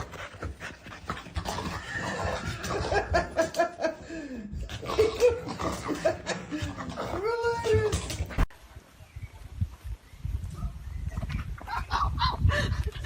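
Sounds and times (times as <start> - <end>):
laughter: 2.6 - 4.3, 11.6 - 13.0.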